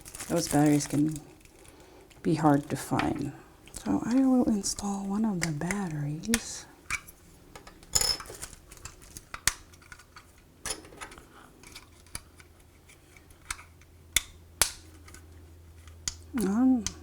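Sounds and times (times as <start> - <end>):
battery rattling: 0.0 - 1.8.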